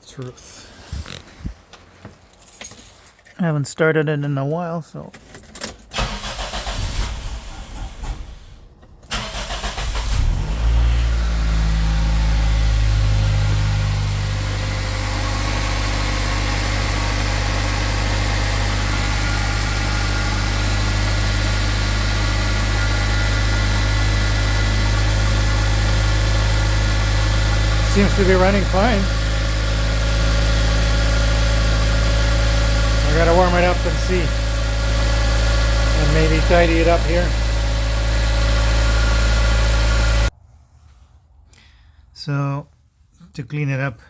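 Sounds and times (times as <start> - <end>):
engine starter cranking: 5.3 - 12.4, 15.4 - 40.3
car engine idling: 5.9 - 40.3.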